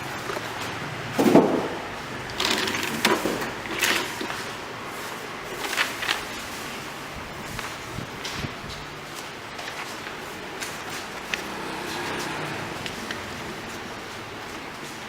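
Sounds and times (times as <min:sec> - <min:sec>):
machine clacks and scraping: 0:09.9 - 0:15.0.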